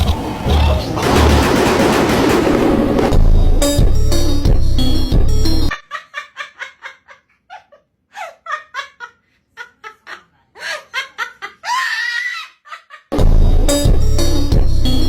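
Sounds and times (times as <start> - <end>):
animal laugh-like yelping call: 9.8 - 13.1.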